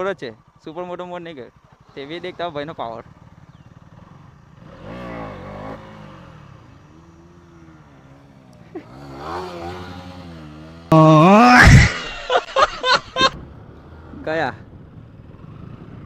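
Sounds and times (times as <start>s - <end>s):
motorcycle engine revving: 1.6s - 11.0s.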